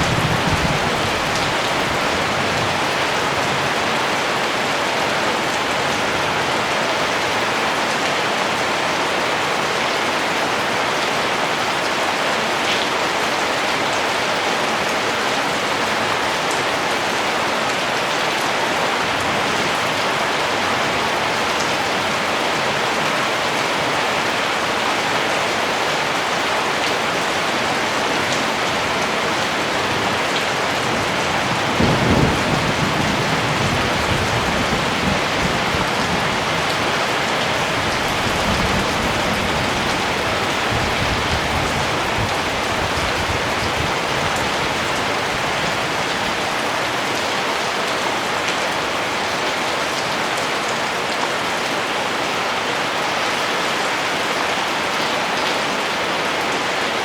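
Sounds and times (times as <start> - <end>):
thunder rumbling: 0.0 - 2.9, 30.1 - 45.8
heavy rain: 0.0 - 57.0.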